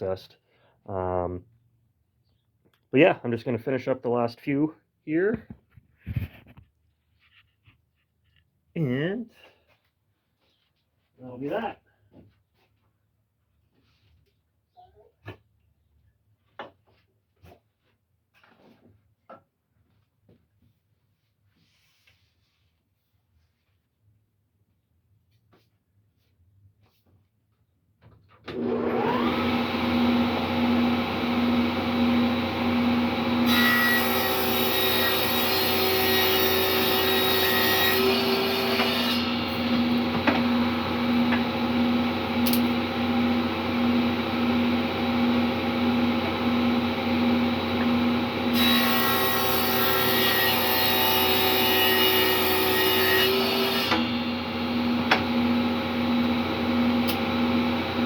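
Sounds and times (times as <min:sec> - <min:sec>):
saw cutting through wood planks: 0:28.5 - 0:58.0
table saw running: 0:28.5 - 0:58.0.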